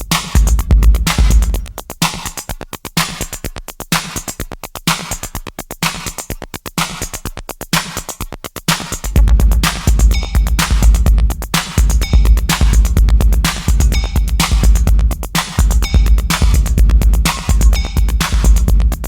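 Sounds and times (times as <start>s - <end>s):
drum machine beat: 0.0s - 19.0s
deep booming bass: 9.2s - 19.0s.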